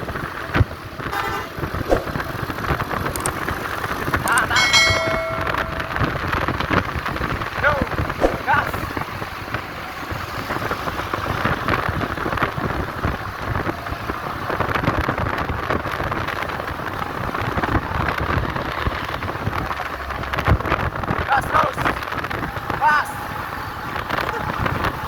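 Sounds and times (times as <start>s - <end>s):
road noise rushing: 0.0s - 25.0s.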